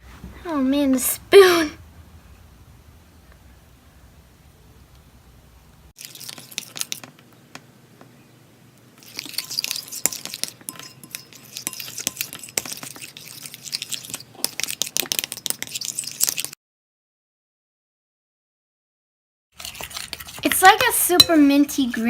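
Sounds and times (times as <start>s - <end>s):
spoon stirring and scraping glue: 6.0s - 7.1s, 9.0s - 16.6s, 19.6s - 22.0s.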